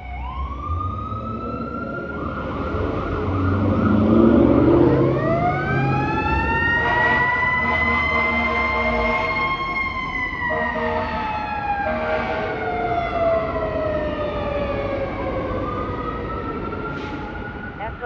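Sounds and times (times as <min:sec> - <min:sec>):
mechanical siren wail: 0:00.0 - 0:18.0
air horn blasts: 0:06.8 - 0:09.6, 0:10.5 - 0:11.2, 0:11.8 - 0:12.6.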